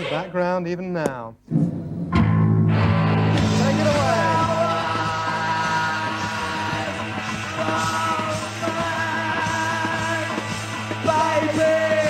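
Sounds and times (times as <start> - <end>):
bass and drums: 1.5 - 12.0
distorted electric guitar: 1.5 - 12.0.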